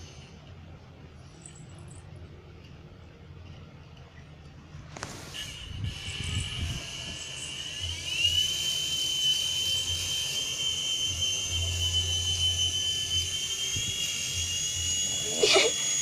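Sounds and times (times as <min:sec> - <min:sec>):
jet engine whine passing over: 0:04.9 - 0:16.0.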